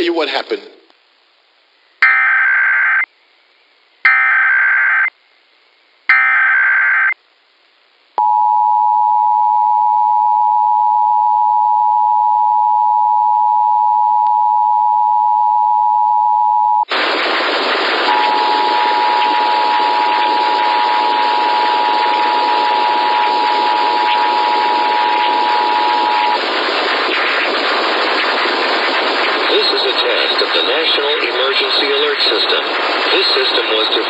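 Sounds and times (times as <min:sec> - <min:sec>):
screeching digital header bursts: 0:02.0 - 0:03.1, 0:04.1 - 0:05.1, 0:06.1 - 0:07.2, 0:18.0 - 0:33.6.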